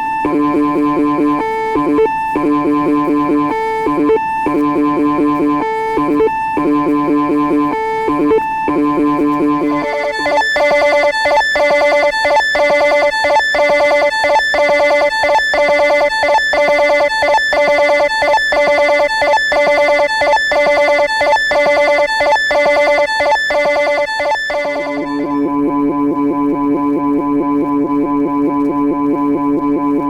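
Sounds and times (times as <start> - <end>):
computer electronic bleeps: 6.1 - 25.5.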